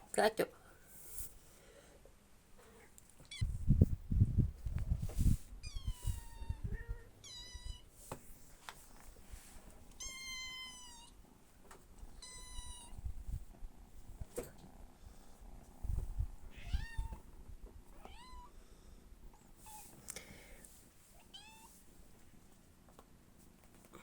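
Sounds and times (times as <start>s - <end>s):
rustling: 2.6s - 6.6s, 7.9s - 10.5s
cat meowing: 3.2s - 3.5s, 5.6s - 7.9s, 10.0s - 11.2s, 12.2s - 13.0s, 16.5s - 17.2s, 18.0s - 18.5s, 21.2s - 21.7s.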